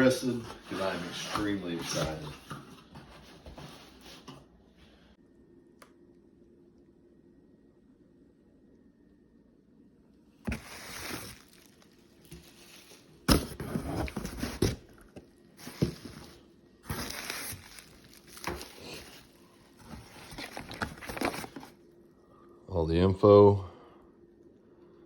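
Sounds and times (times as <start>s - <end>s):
packaging rustling: 10.5s - 21.8s.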